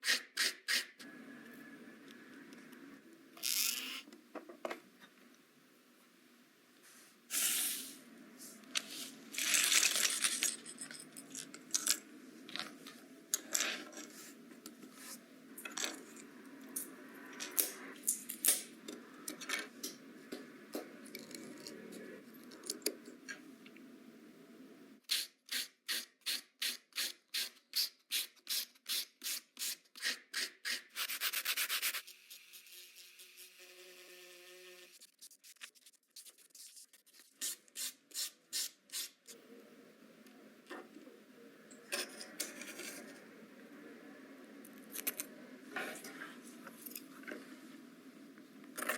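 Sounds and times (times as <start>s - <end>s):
sandpaper sanding plastic: 25.6s - 32.6s.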